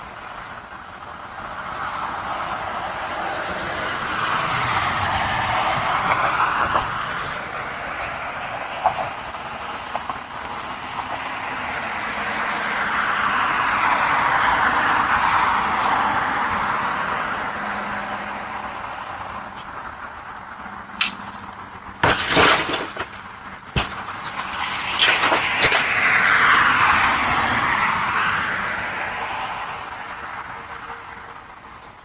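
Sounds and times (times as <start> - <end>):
vehicle passing: 1.4 - 32.0
sharp clicks and knocks: 21.0 - 26.0.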